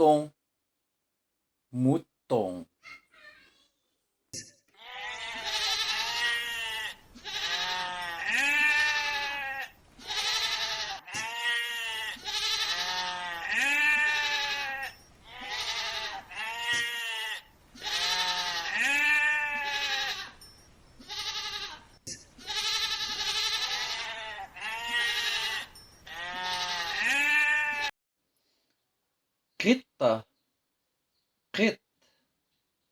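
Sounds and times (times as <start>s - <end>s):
sheep bleating: 4.8s - 20.4s, 21.0s - 21.8s, 22.4s - 27.9s.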